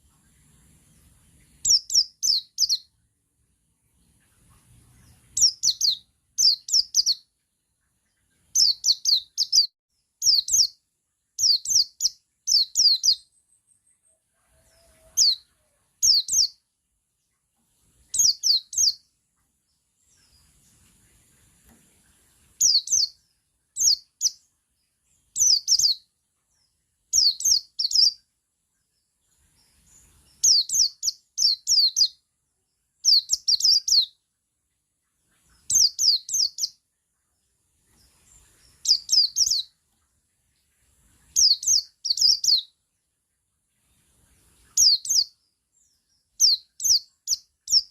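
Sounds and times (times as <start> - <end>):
bird singing rapid falling notes: 0.0 - 3.1, 3.9 - 14.2, 16.0 - 16.6, 18.0 - 19.2, 19.8 - 28.3, 29.0 - 32.2, 33.0 - 34.2, 35.5 - 36.8, 38.0 - 39.7, 41.2 - 42.8, 44.6 - 47.9.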